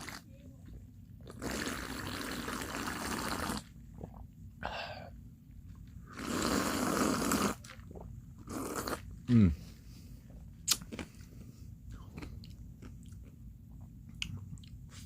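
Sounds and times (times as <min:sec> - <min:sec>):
noisy sips through a straw: 0:01.3 - 0:04.2, 0:06.0 - 0:07.7, 0:08.4 - 0:09.1.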